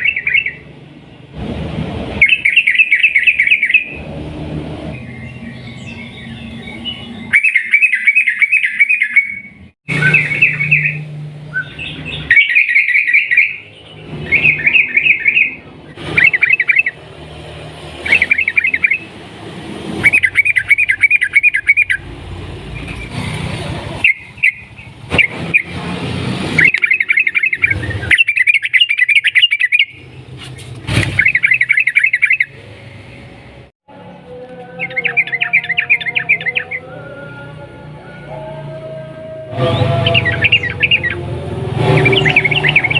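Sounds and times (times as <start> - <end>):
bird singing trilling phrases: 0.0 - 0.7, 2.2 - 4.0, 4.9 - 17.1, 17.9 - 19.2, 19.9 - 23.3, 24.0 - 25.8, 26.6 - 33.4, 34.7 - 37.5, 39.6 - 42.9.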